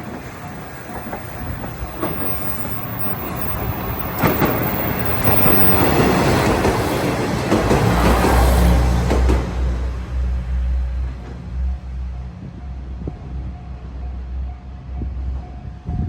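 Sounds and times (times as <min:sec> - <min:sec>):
wheels clacking over rail joints: 0:00.0 - 0:11.8
electric train running: 0:00.0 - 0:13.5.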